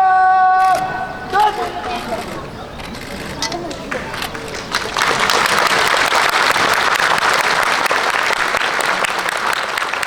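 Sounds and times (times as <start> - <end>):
crowd applauding: 3.9 - 10.0.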